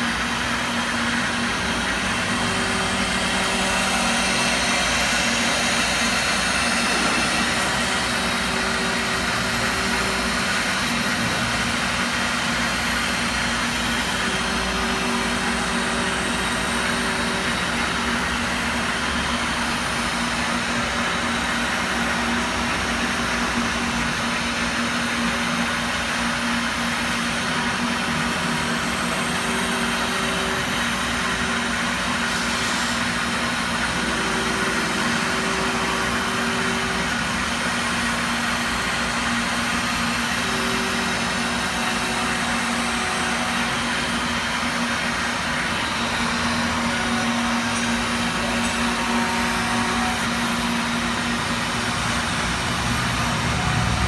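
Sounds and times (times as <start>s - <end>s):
machine hum and rushing noise: 0.0s - 54.0s
higher machine tone: 46.0s - 54.0s.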